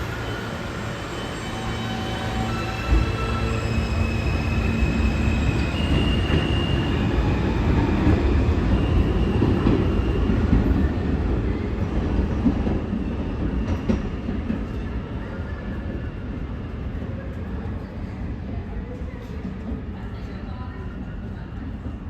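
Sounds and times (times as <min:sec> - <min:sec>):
high wheel squeal: 0:00.0 - 0:07.2
subway train rumbling on rails: 0:00.0 - 0:22.0.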